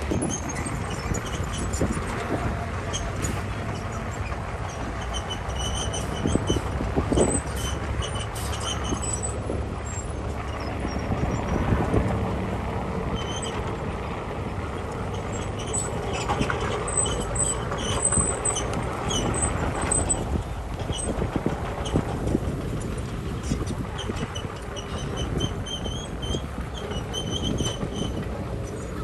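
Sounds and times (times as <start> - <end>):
short high squeaks: 0.0 - 11.1, 15.2 - 22.0, 23.4 - 28.9
diesel engine drone: 0.0 - 29.0.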